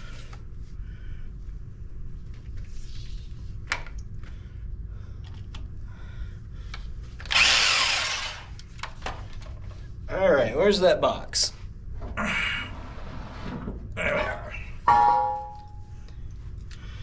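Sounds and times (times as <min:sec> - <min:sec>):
low steady hum: 0:00.0 - 0:17.0
hammer drill drilling: 0:07.3 - 0:08.5.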